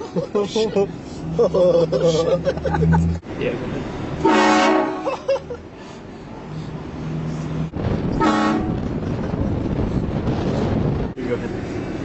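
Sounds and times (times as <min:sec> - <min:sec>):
train horn blasting: 0:04.2 - 0:05.0, 0:08.2 - 0:08.8.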